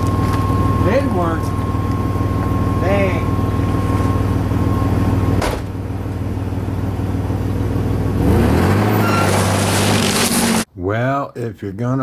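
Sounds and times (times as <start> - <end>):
vehicle engine idling and revving: 0.0 - 10.7.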